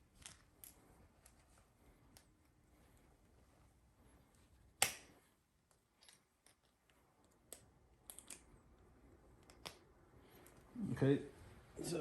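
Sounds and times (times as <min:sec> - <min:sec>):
small plastic clicks and snaps: 0:04.8 - 0:08.5.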